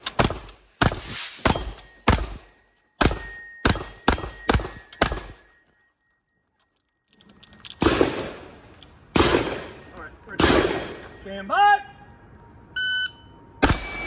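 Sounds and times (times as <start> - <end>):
thin ringing tone: 1.1 - 7.1
shotgun shots echoing: 7.8 - 8.4, 9.2 - 11.0.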